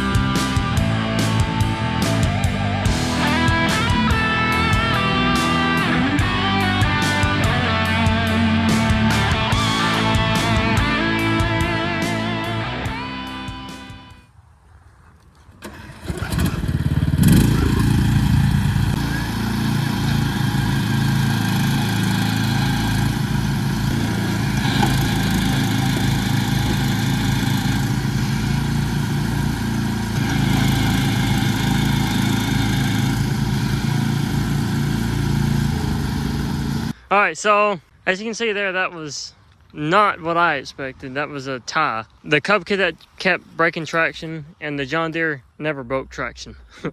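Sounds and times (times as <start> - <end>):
riding lawn mower engines: 0.0 - 14.1, 15.4 - 37.0
music: 0.0 - 14.3.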